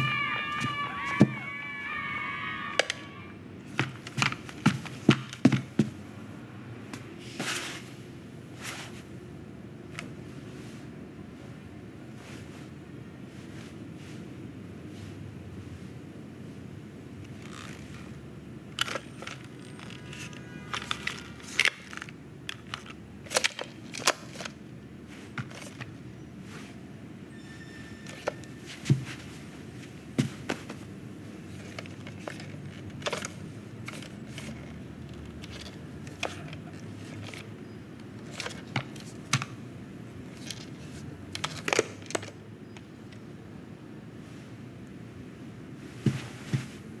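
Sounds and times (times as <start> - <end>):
squeaky whine: 0.0 - 3.4, 27.2 - 29.3
low background hum: 0.0 - 47.0.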